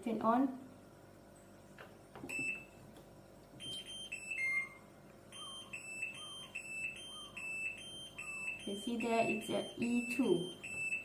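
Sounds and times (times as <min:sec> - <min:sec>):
electronic beeps: 0:03.6 - 0:11.0.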